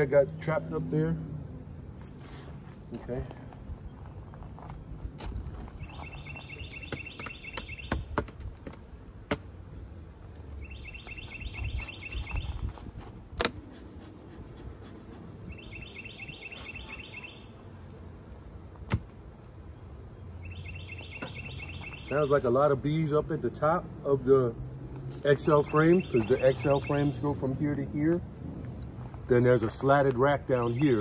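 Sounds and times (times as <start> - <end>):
songbird trilling: 5.8 - 8.1, 10.6 - 12.7, 15.5 - 17.6, 20.4 - 22.5, 25.4 - 28.0.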